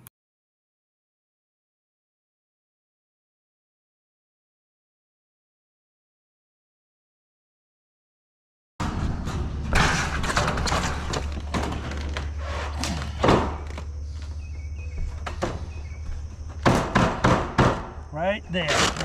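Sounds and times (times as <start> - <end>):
steady low hum: 8.8 - 19.0
knocks on sheet-metal roofing: 15.0 - 18.0.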